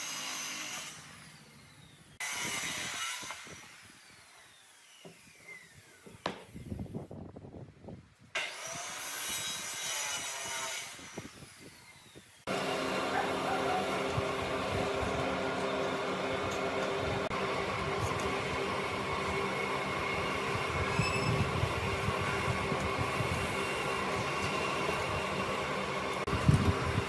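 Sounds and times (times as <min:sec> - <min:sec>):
machine whirring hum: 0:12.5 - 0:27.0.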